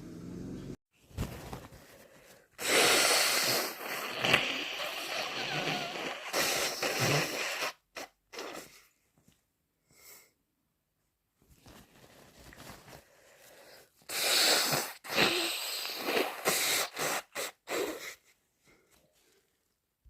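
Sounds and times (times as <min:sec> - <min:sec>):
person blowing nose: 0:02.5 - 0:09.0, 0:13.8 - 0:18.4
person sneezing: 0:02.6 - 0:08.9, 0:14.1 - 0:18.3.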